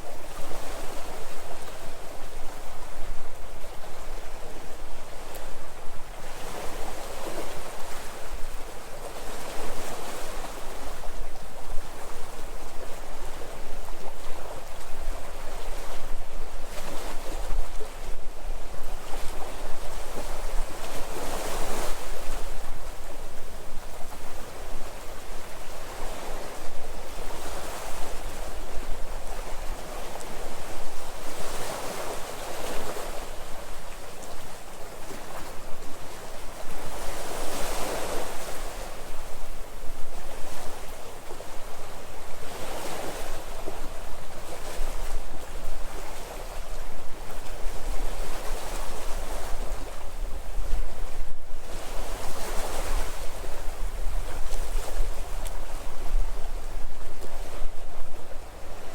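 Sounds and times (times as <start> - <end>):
sea waves breaking: 42.4 - 58.9.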